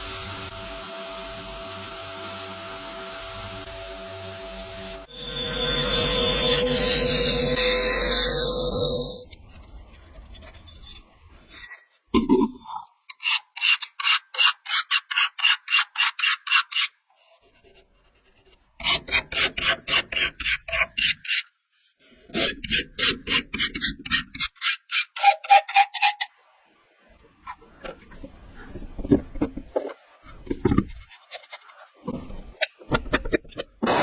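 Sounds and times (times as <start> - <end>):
abrasive rubbing on metal: 5.0 - 9.3.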